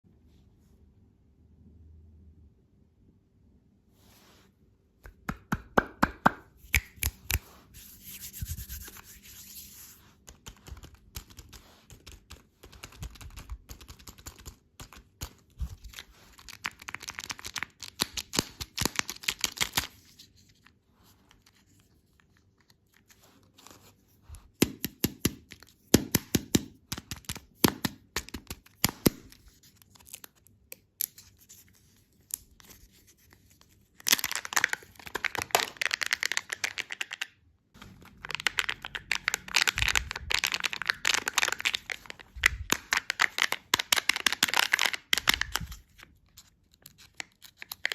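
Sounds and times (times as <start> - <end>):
plastic wrappers tearing and crinkling: 38.0 - 45.9.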